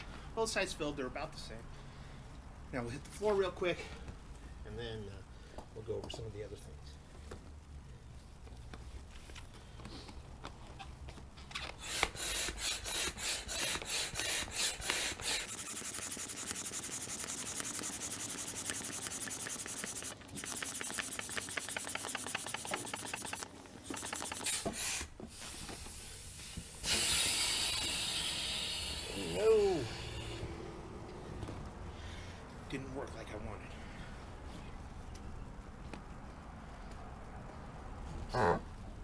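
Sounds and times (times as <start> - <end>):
air pump strokes: 11.8 - 30.4.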